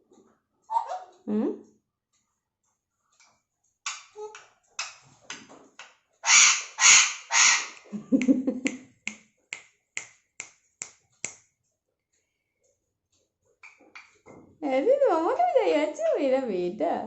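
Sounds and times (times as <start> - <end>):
parakeet screeching: 6.2 - 7.8.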